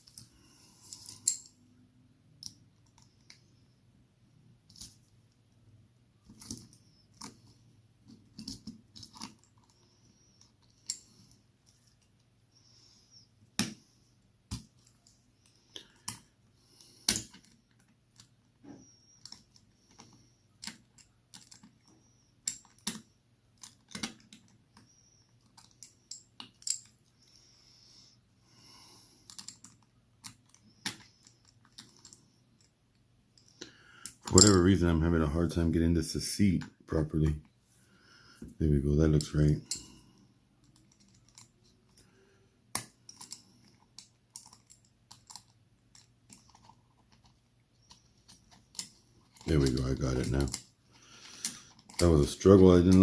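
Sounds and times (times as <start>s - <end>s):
metal tools clicking and tapping: 0.9s - 1.6s, 8.4s - 12.0s, 17.1s - 23.0s, 23.6s - 27.0s, 29.3s - 32.7s, 33.4s - 34.6s, 40.6s - 42.1s, 42.7s - 53.0s.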